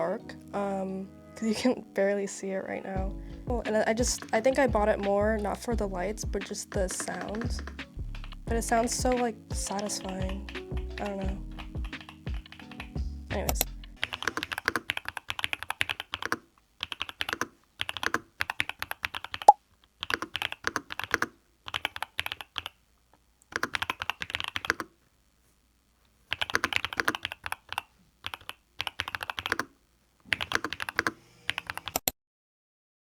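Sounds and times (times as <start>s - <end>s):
mechanical keyboard typing: 3.6s - 5.2s, 6.4s - 22.8s, 23.5s - 24.9s, 26.3s - 32.1s.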